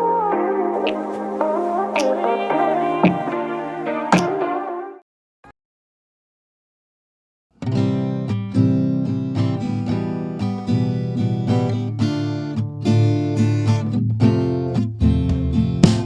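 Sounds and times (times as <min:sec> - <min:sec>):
strummed acoustic guitar: 0:07.6 - 0:16.0.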